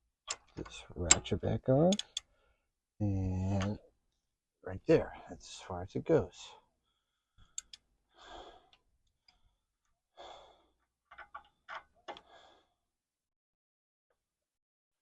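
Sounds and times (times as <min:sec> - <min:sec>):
person breathing out heavily: 0:10.2 - 0:10.7.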